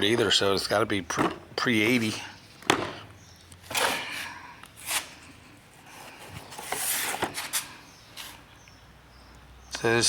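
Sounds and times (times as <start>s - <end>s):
cardboard boxes rustling and scraping: 3.6s - 8.4s.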